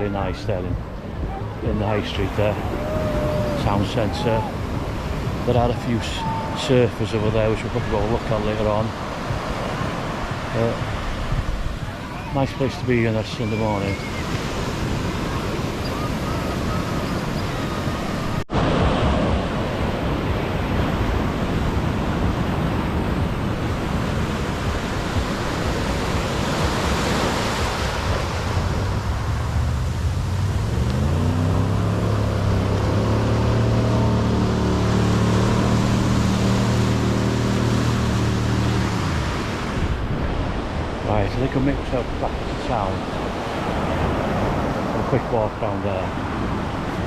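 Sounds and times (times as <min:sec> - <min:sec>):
ocean surf washing on beach: 0:00.0 - 0:47.0
wind buffeting microphone: 0:13.5 - 0:45.2.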